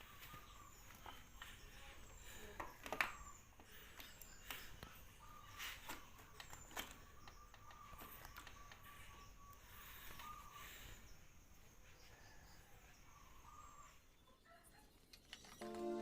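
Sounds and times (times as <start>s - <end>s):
small parts and tools clicking: 14.9s - 16.0s.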